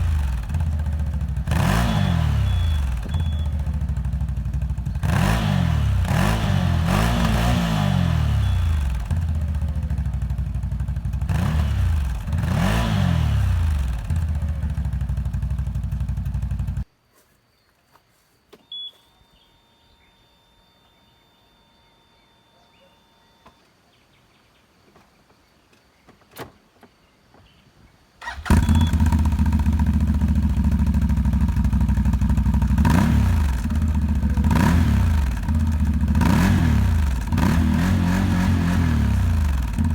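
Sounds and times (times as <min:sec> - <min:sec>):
atv engine idling and revving: 0:00.0 - 0:16.9, 0:28.2 - 0:39.9
short beep: 0:02.0 - 0:03.7, 0:18.6 - 0:23.6, 0:28.5 - 0:29.2.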